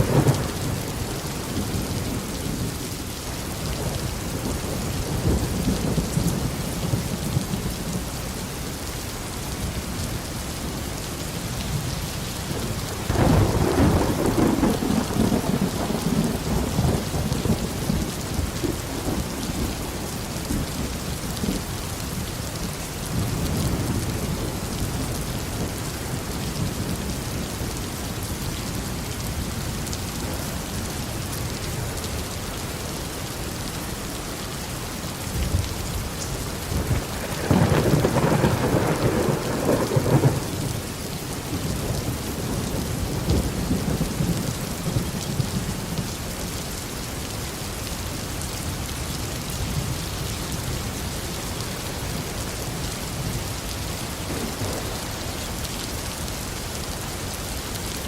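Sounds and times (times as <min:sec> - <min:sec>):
rain falling steadily: 0:00.0 - 0:58.0
rolling thunder: 0:12.5 - 0:21.6, 0:36.6 - 0:40.8.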